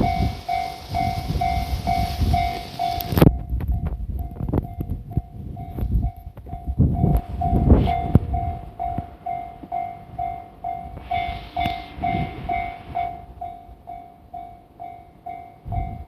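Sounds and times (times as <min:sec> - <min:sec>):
hiss: 0:00.0 - 0:03.2, 0:11.0 - 0:13.0
level-crossing warning bell ringing: 0:00.0 - 0:16.0
train rumbling past: 0:00.0 - 0:16.0.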